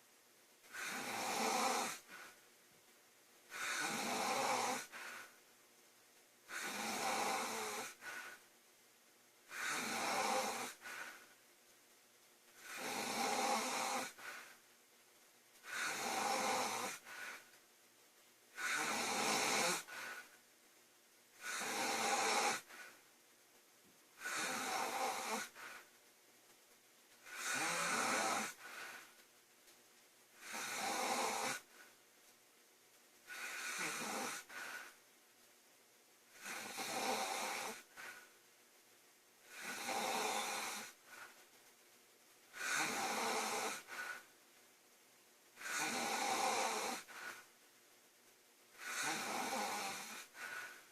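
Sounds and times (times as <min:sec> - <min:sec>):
woman snoring loudly: 0:00.7 - 0:02.3, 0:03.5 - 0:05.2, 0:06.5 - 0:08.4, 0:09.5 - 0:11.2, 0:12.6 - 0:14.4, 0:15.6 - 0:17.4, 0:18.6 - 0:20.2, 0:21.4 - 0:22.9, 0:24.2 - 0:25.8, 0:27.2 - 0:29.0, 0:30.4 - 0:31.7, 0:33.3 - 0:34.9, 0:36.4 - 0:38.2, 0:39.4 - 0:41.0, 0:42.5 - 0:44.2, 0:45.6 - 0:47.4, 0:48.8 - 0:50.6
soft breath: 0:02.0 - 0:02.5, 0:04.8 - 0:05.5, 0:07.8 - 0:08.5, 0:10.6 - 0:11.4, 0:14.0 - 0:14.7, 0:28.5 - 0:29.2, 0:43.7 - 0:44.4, 0:46.9 - 0:47.6, 0:49.8 - 0:50.9.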